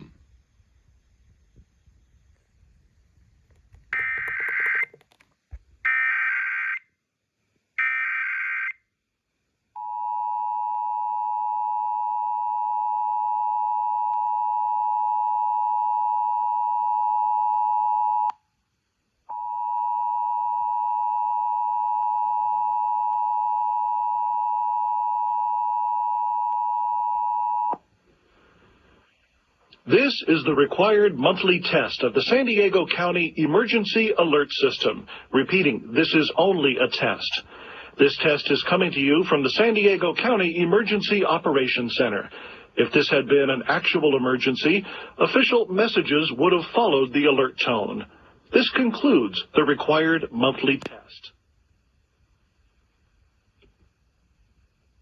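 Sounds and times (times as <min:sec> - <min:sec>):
warbling digital header code: 0:03.9 - 0:04.9.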